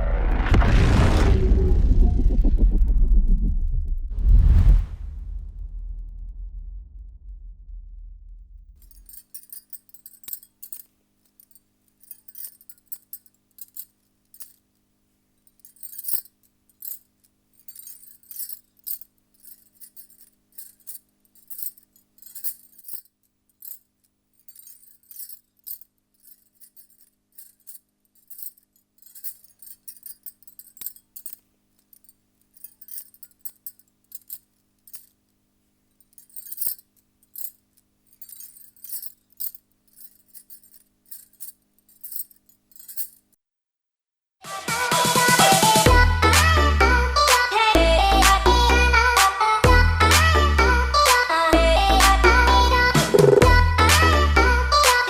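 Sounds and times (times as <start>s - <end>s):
bangles jingling: 8.8s - 43.4s.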